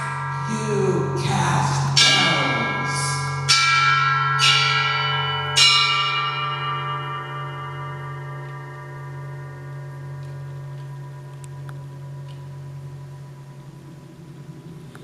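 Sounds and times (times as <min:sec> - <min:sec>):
low drone: 0:00.0 - 0:03.6, 0:07.1 - 0:15.0
bells ringing: 0:00.0 - 0:14.9.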